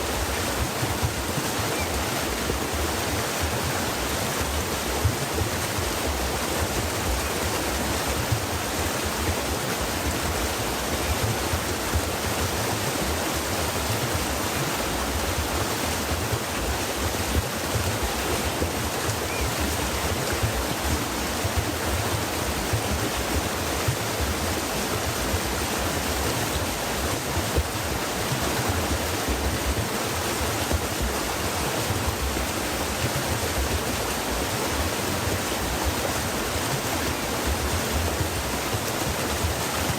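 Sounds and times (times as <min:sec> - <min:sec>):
stream water splashing over stones: 0:00.0 - 0:39.9.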